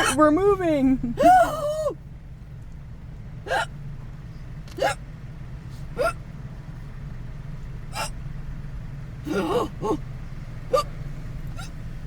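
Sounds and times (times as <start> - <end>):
woman hiccuping: 0.0 - 0.2, 1.2 - 2.0, 3.5 - 3.8, 4.7 - 5.0, 6.0 - 6.2, 8.0 - 8.2, 9.3 - 10.0, 10.7 - 10.9, 11.6 - 11.8
low car cabin hum: 0.0 - 12.0.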